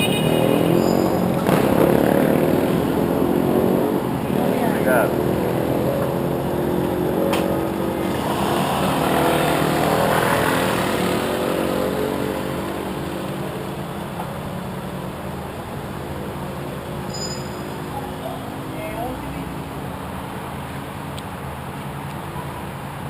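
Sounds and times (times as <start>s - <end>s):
motorcycle engine riding away: 0.3s - 17.1s.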